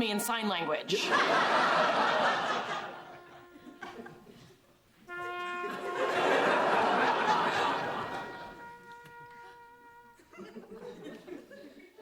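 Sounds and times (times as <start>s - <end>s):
studio audience laughter: 0.9s - 4.5s, 5.6s - 8.6s, 10.4s - 12.0s.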